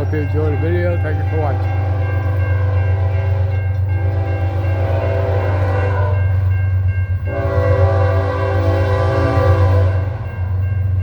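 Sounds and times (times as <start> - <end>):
locomotive engine rumble: 0.0 - 11.0
locomotive air horn chord: 1.1 - 6.5, 7.3 - 10.6.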